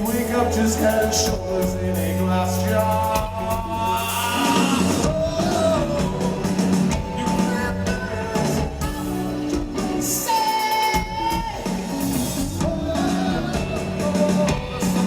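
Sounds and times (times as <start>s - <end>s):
person singing: 0.0s - 15.0s
rock band playing live: 0.0s - 15.0s.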